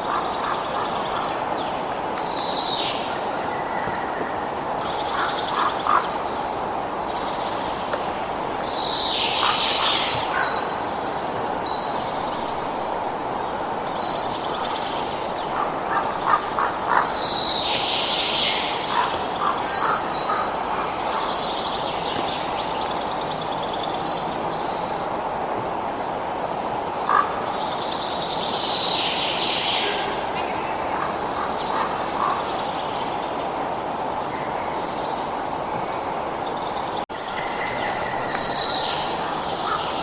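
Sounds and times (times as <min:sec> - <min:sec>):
wild birds calling and chirping: 0:00.0 - 0:25.0, 0:26.8 - 0:35.3, 0:36.1 - 0:40.0
clicking bird calls: 0:37.3 - 0:40.0.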